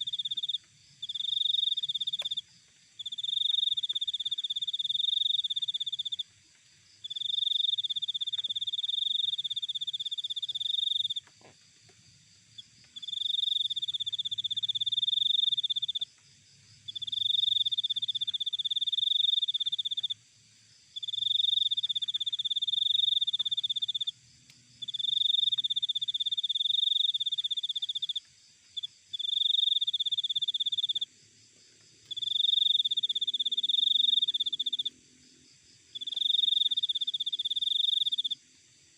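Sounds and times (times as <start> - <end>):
cricket chirping trills: 0.0 - 38.9
insect chorus: 0.0 - 38.9.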